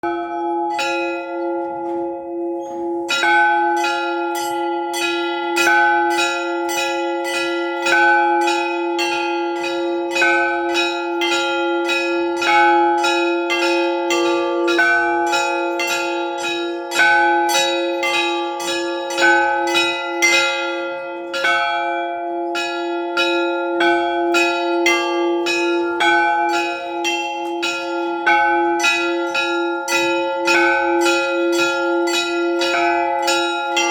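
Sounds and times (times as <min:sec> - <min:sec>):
large low bell struck: 0:00.0 - 0:33.9.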